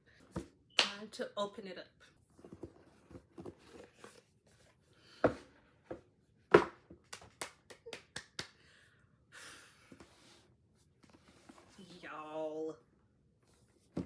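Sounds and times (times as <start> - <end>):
sharp knocks on box: 6.5 - 6.9.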